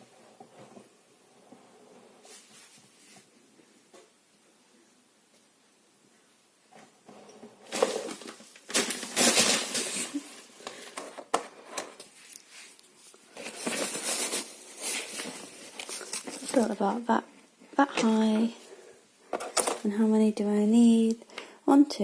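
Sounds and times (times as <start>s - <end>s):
rustling of plastic plant pots: 6.9s - 20.0s
potting compost scraping: 12.2s - 17.1s.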